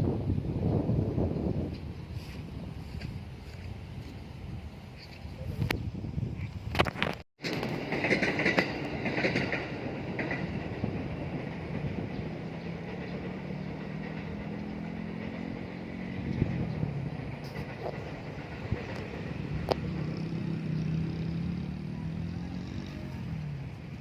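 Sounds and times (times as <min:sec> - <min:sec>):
vehicle engine humming: 0:12.4 - 0:24.0.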